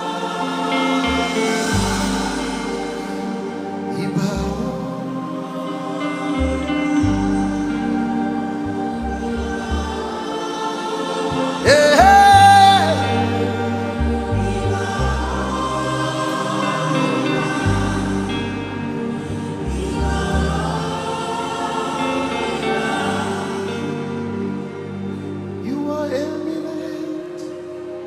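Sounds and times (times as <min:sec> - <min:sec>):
choir singing: 0:00.0 - 0:28.0
keyboard chords: 0:00.0 - 0:28.0
bass line: 0:01.0 - 0:03.5, 0:06.4 - 0:10.1, 0:11.3 - 0:21.0.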